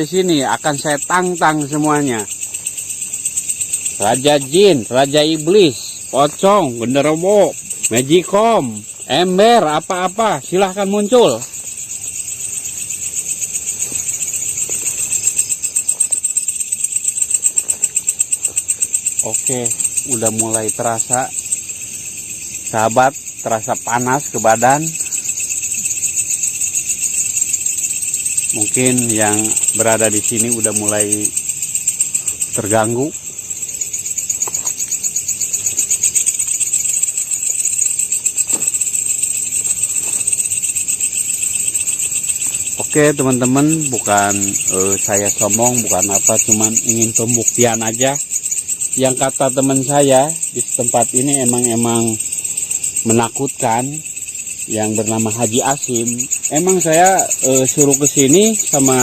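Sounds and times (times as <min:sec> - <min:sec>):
crickets chirring: 0:00.0 - 0:59.0
pulsing insect chorus: 0:00.0 - 0:59.0.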